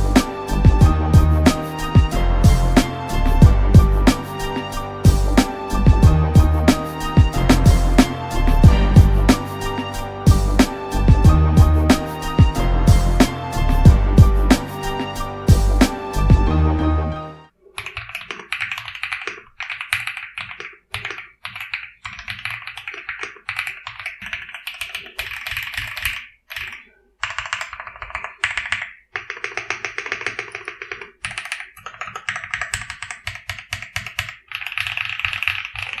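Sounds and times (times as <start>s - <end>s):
mechanical keyboard typing: 17.8s - 36.0s.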